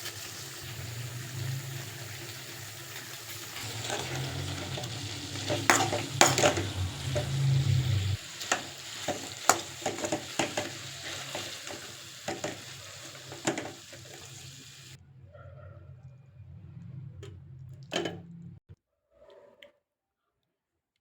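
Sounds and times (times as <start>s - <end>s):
chicken sizzling in oil: 0.0s - 15.0s
low hum: 3.6s - 8.2s.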